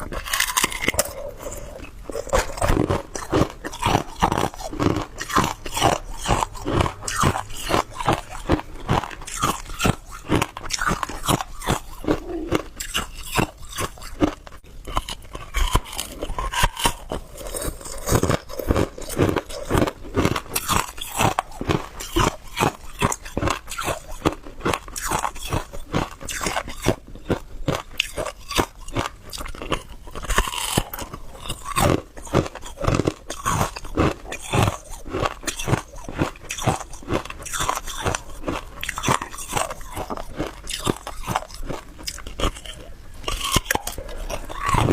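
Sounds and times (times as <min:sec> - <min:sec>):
ice being chewed: 0:00.0 - 0:44.9.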